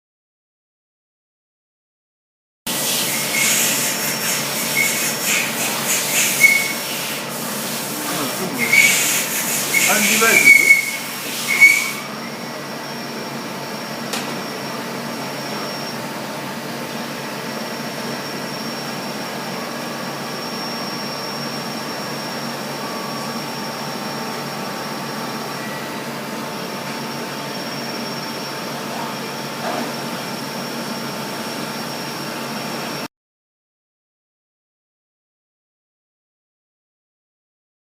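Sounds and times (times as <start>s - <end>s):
machinery whirring hiss: 2.8s - 12.3s.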